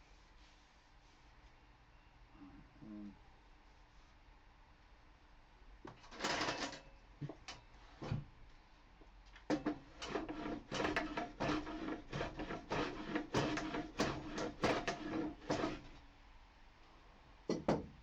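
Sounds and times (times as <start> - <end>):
hand plane strokes on wood: 10.0 - 16.0.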